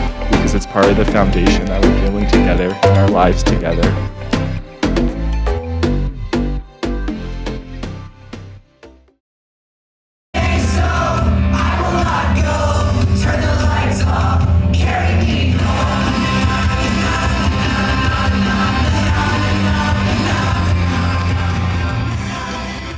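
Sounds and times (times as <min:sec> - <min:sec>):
steady bass line: 0:00.0 - 0:08.1
music with singing: 0:00.0 - 0:08.5, 0:10.4 - 0:22.9.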